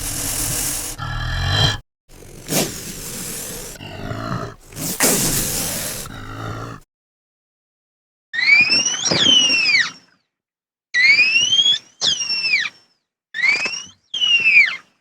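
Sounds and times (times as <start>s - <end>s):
creature shrieks: 0.0s - 6.8s.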